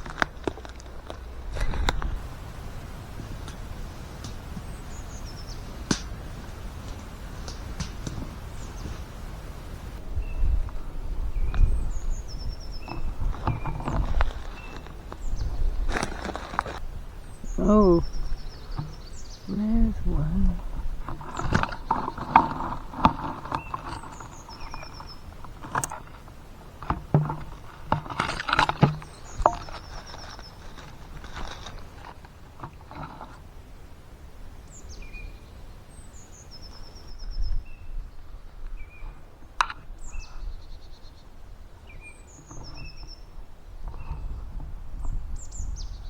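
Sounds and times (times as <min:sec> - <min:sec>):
footsteps in leaf litter: 0:00.0 - 0:10.0, 0:13.2 - 0:16.9, 0:27.4 - 0:33.3
songbirds chirping and trilling: 0:00.0 - 0:46.0.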